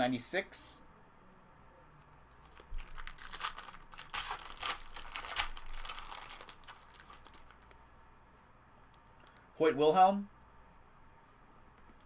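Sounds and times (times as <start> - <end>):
plastic wrapper crinkling and tearing: 2.3 - 7.8.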